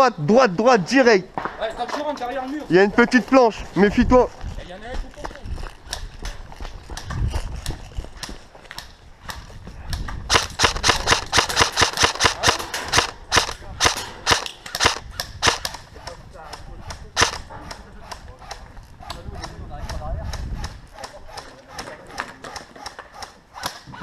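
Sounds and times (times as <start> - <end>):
airsoft gun shots: 10.3 - 15.8, 17.2 - 17.5.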